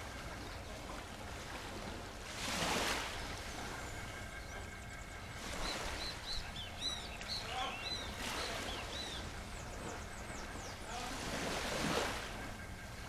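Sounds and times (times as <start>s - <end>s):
waves washing onto shore: 0.0s - 4.2s, 5.4s - 13.0s
birds chirping: 3.1s - 13.0s.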